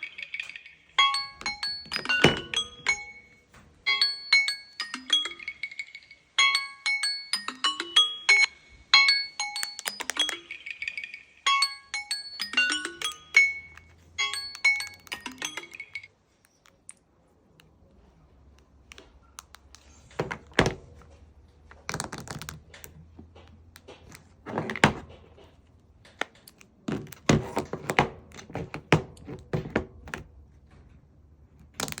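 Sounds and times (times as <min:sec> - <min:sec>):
smartphone alarm chime: 0:01.0 - 0:16.1.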